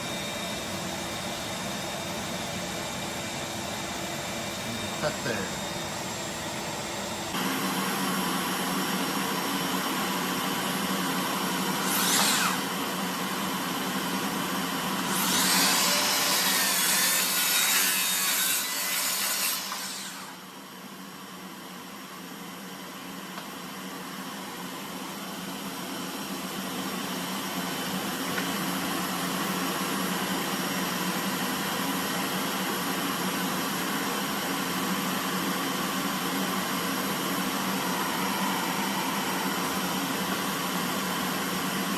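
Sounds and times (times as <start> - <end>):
steady machine hum: 0.0 - 11.8, 20.4 - 41.9
power saw cutting wood: 11.6 - 12.7, 15.0 - 20.4, 35.8 - 41.9.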